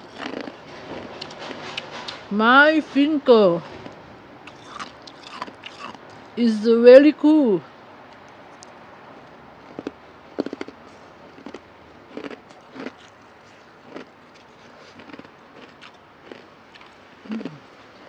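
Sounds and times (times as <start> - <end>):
ice crunching while chewed: 0.0 - 0.6, 4.5 - 6.0, 9.7 - 17.6.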